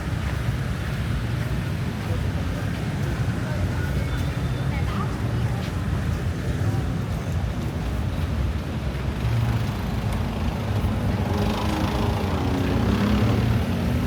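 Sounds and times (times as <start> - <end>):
street traffic rumbling: 0.0 - 14.0
vehicle engine passing: 11.1 - 14.0.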